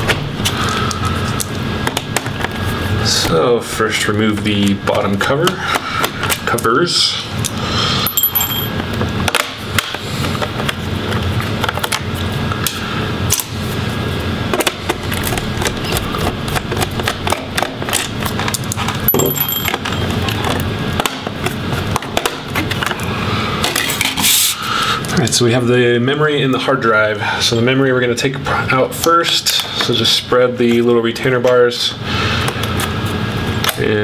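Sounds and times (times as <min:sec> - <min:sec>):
steady low hum: 0:00.0 - 0:23.7
screwdriver and screws rattling: 0:08.1 - 0:08.7, 0:19.1 - 0:20.1.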